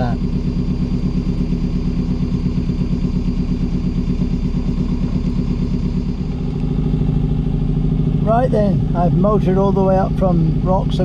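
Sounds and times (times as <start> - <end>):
boat inboard engine running: 0.0 - 11.0.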